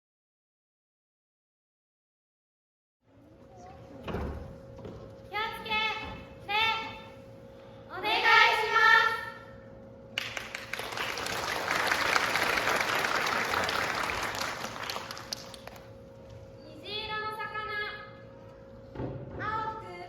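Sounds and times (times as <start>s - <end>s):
audience applauding: 10.2s - 15.9s.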